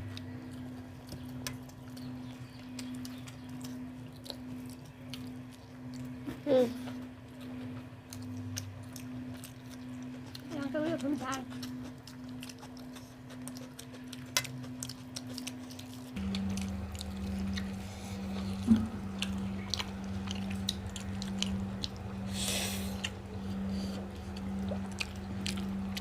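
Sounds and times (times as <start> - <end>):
chewing and wet mouth sounds: 0.0 - 26.0
steady low hum: 0.0 - 26.0
small clicks and smacks: 0.1 - 6.2.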